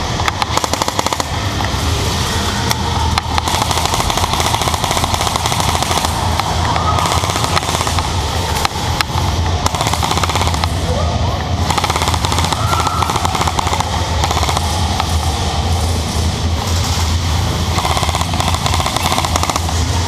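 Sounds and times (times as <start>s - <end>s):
steady background din: 0.0s - 20.0s
airsoft guns firing: 0.2s - 1.6s, 3.1s - 11.0s, 11.6s - 15.5s, 17.7s - 20.0s.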